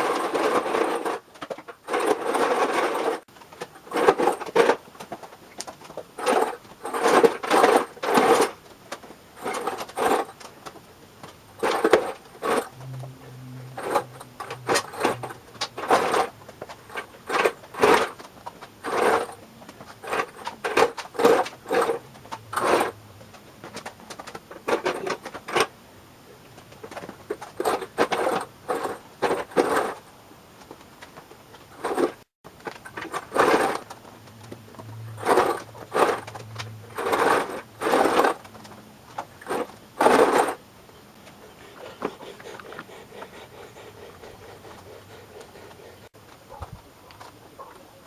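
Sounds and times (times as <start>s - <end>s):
faint low hum: 5.4s - 24.1s.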